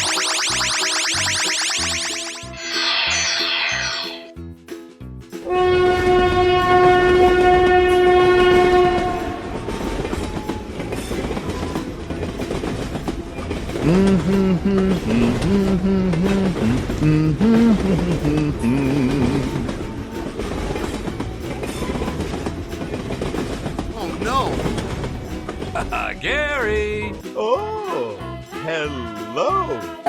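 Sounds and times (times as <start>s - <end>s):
short pitched tune: 0.0s - 4.4s
train horn blast: 5.5s - 9.8s
train rumbling along track: 5.5s - 27.2s.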